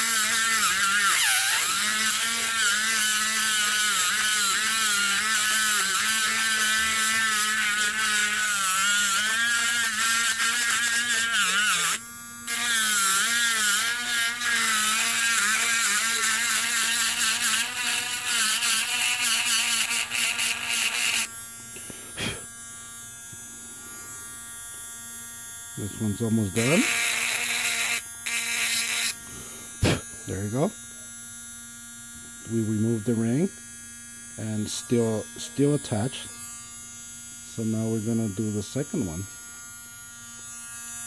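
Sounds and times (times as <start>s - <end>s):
rotary grinder grinding metal: 0.0s - 21.4s, 25.8s - 30.7s, 34.2s - 41.0s.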